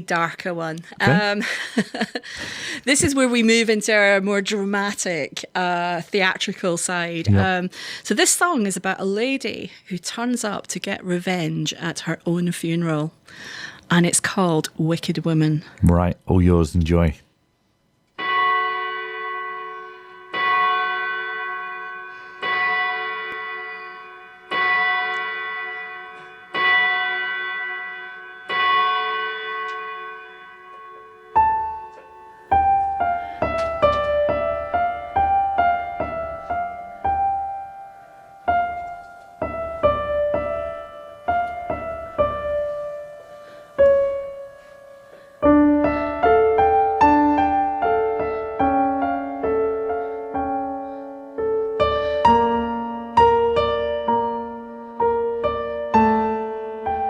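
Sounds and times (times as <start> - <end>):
bell-like keyboard chord: 1.0 - 1.2, 7.3 - 7.5, 18.2 - 57.0
fast keyboard melody: 31.4 - 57.0.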